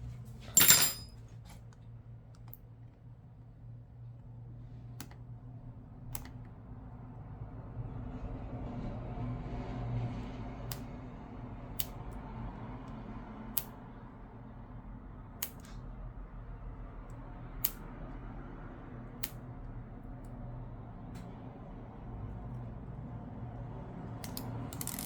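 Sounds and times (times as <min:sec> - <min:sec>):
sharp clicks of small tools: 0:06.1 - 0:06.4, 0:11.8 - 0:12.1, 0:15.4 - 0:15.8, 0:17.1 - 0:17.8, 0:19.2 - 0:19.4, 0:24.2 - 0:25.0.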